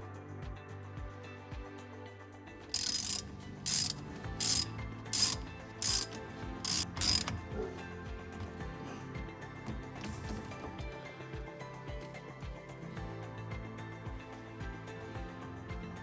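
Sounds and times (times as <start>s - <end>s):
mechanical ratcheting clicks: 2.7s - 7.4s
music with steady beat: 2.7s - 16.0s.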